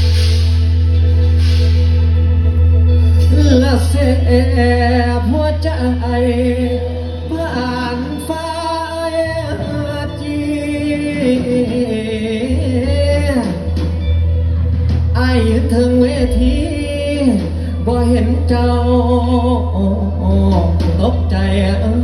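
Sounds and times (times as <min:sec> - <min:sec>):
heavy steady bass: 0:00.0 - 0:22.0
live band through pa system: 0:00.0 - 0:22.0
wavering lead melody: 0:00.0 - 0:22.0.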